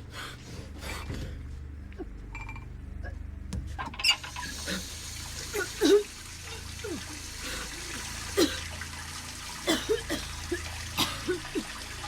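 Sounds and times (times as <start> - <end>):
woman coughing: 11.0 - 11.4.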